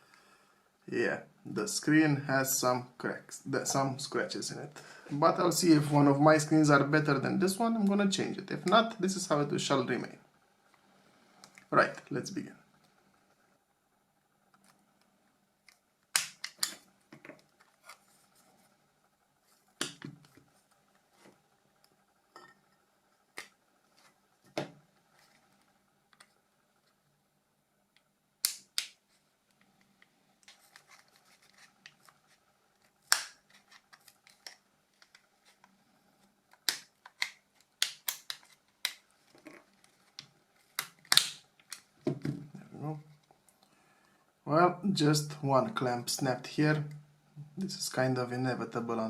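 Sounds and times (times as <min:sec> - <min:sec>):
plastic clicks and snaps: 0:28.0 - 0:29.0, 0:36.5 - 0:41.9.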